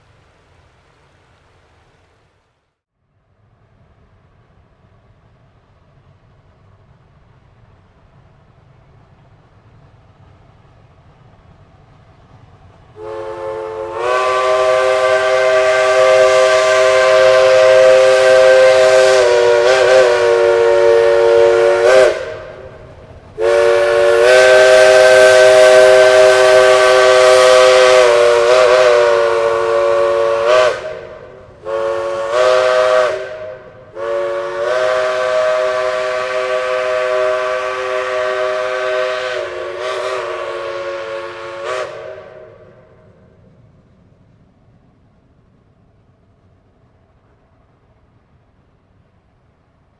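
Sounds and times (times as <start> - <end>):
steam hissing: 9.3 - 43.5
steam locomotive whistle blasts: 13.0 - 22.8, 23.4 - 43.0.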